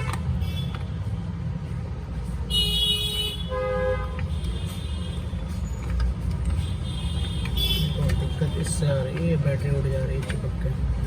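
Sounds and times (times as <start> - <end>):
road traffic rumble: 0.0 - 11.0
vehicle horns honking: 2.5 - 5.5, 6.5 - 9.0.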